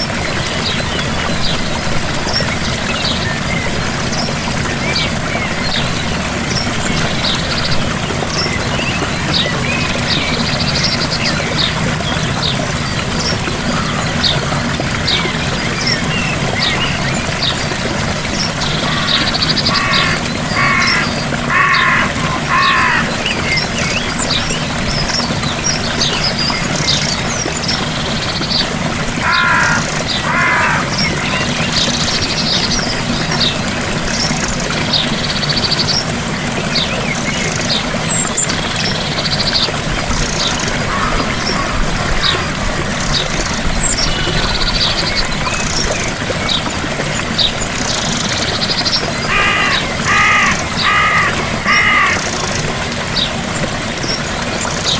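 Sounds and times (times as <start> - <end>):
birds singing and chirping: 0.0 - 54.9
small waterfall rushing: 0.0 - 54.9
harsh repeated bird calls: 18.3 - 24.4, 29.2 - 32.6, 40.4 - 45.1, 49.0 - 52.8.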